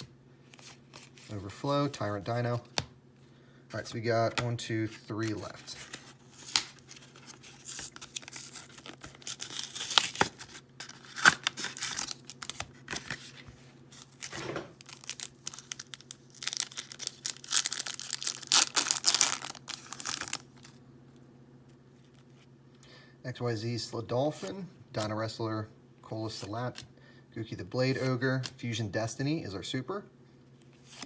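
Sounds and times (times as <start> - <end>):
faint steady hum: 0.0 - 31.0
packaging being torn open: 6.4 - 13.2, 14.0 - 20.6.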